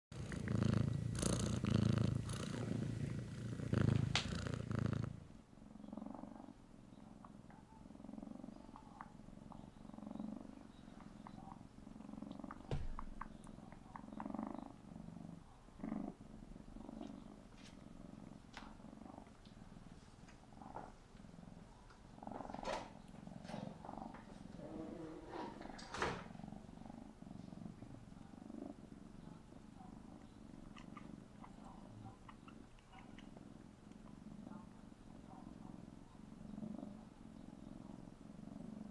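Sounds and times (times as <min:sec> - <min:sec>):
kitten purring: 0:00.1 - 0:38.9
wet lip-smacking clicks: 0:12.3 - 0:14.3.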